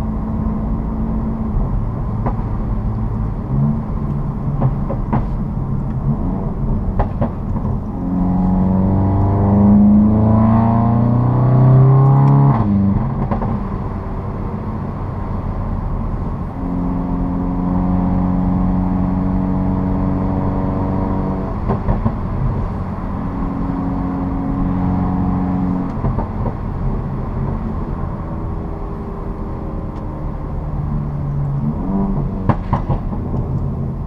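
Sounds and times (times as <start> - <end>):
road noise: 0.0 - 34.0
exhaust pops: 32.2 - 33.7.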